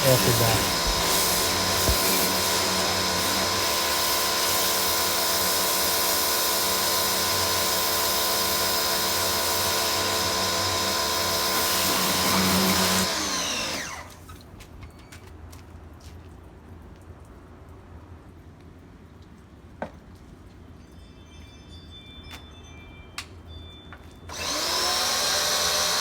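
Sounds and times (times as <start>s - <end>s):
pressure washer running: 0.0s - 14.2s, 24.3s - 26.0s.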